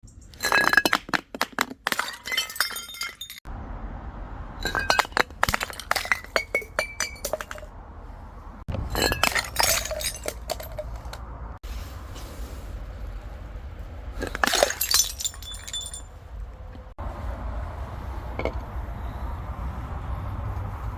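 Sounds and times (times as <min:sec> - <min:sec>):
glass bottles being crushed: 0:00.3 - 0:03.5, 0:04.6 - 0:07.7, 0:08.7 - 0:11.2, 0:14.2 - 0:16.1.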